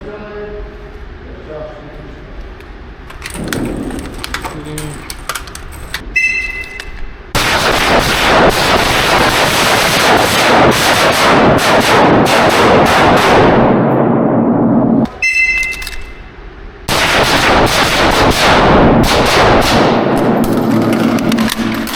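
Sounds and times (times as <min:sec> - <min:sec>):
rapid rifle fire: 0:07.3 - 0:13.9, 0:16.9 - 0:21.9
rifle shots: 0:07.4 - 0:14.2, 0:16.9 - 0:21.7.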